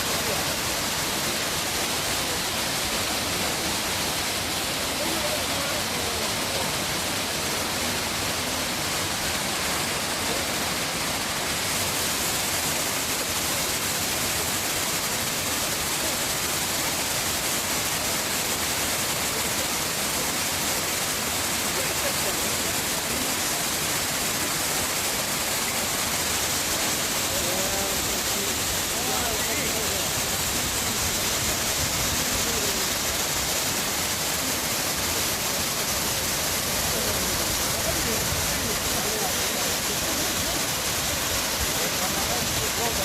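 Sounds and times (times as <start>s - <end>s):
waterfall rushing: 0.0s - 43.0s.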